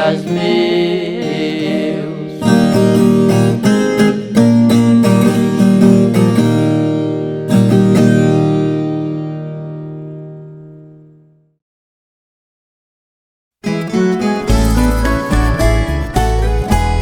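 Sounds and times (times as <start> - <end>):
guitar picking and strumming: 0.0 - 11.4, 13.6 - 17.0.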